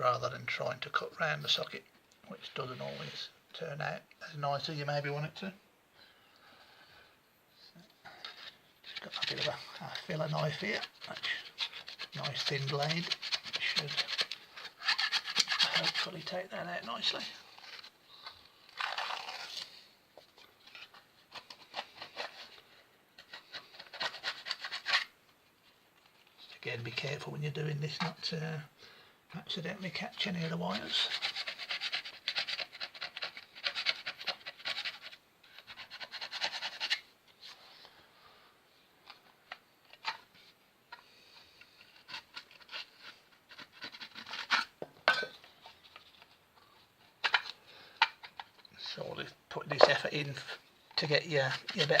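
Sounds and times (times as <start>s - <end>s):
knife scraping wallpaper: 8.1s - 17.9s, 18.7s - 19.8s, 20.7s - 22.6s, 23.2s - 25.1s, 30.4s - 38.0s, 39.9s - 46.3s, 49.7s - 52.0s.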